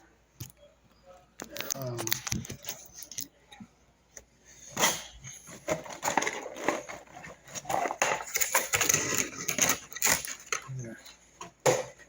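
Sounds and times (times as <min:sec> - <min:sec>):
plastic packaging crinkling: 0:05.4 - 0:10.8.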